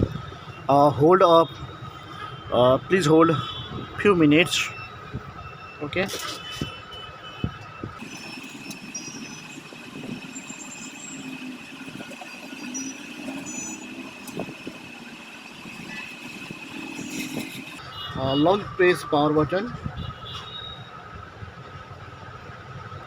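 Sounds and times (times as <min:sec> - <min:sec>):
high-pitched whine: 0:07.9 - 0:17.8.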